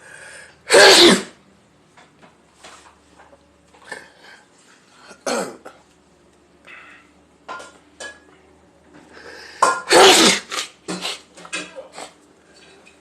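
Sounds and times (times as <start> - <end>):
person sneezing: 0.7 - 1.4, 9.6 - 12.2.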